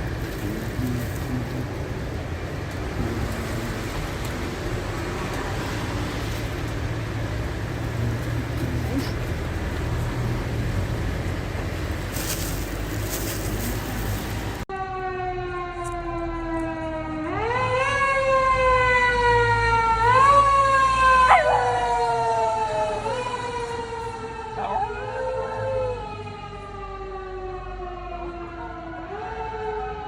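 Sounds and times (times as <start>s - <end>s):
siren wailing: 14.7s - 30.0s
dog howling: 21.1s - 23.3s, 24.6s - 26.0s.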